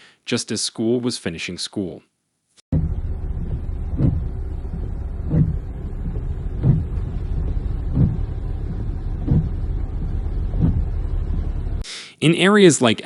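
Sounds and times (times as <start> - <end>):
vehicle driving through floodwater: 2.8 - 11.8.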